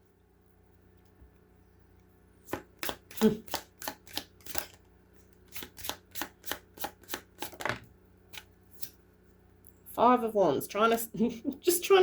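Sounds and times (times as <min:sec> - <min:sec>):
cards slapping while shuffled: 0:02.5 - 0:04.8, 0:05.4 - 0:08.9.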